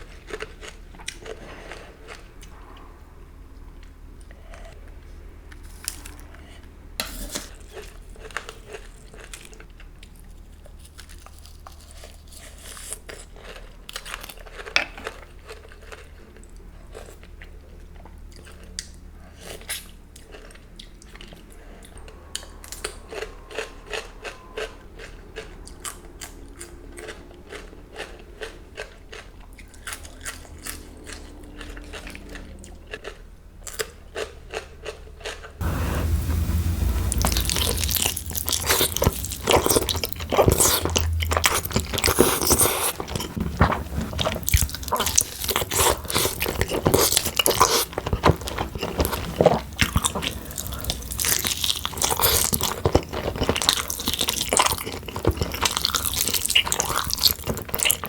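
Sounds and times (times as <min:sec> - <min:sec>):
crunchy bites and chewing: 0:36.1 - 0:58.0.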